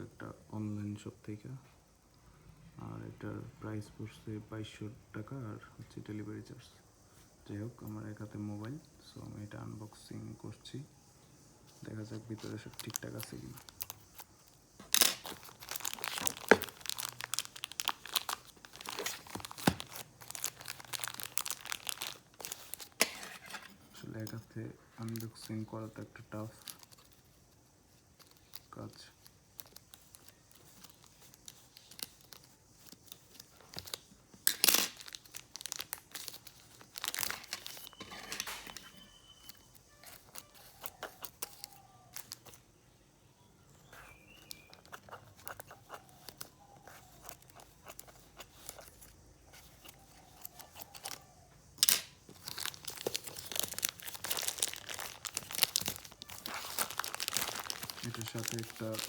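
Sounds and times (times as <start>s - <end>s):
packaging crinkling and tearing: 12.3s - 24.4s, 25.0s - 42.6s, 44.0s - 59.0s.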